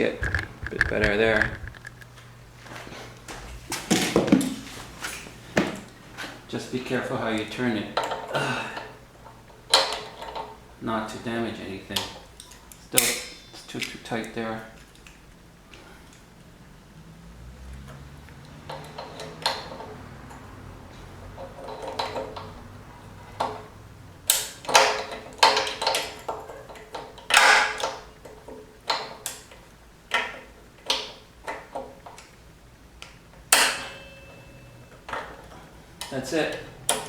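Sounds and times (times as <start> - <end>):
faint scrapes: 0.0 - 2.2.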